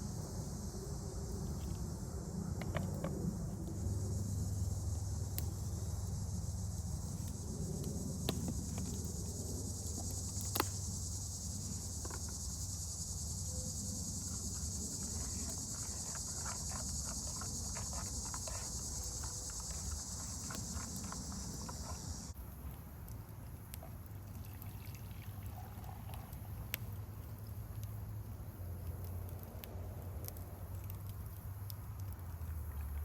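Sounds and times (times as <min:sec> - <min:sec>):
insects chirring: 0:00.0 - 0:22.9
faint clicks and ticks: 0:25.8 - 0:33.0.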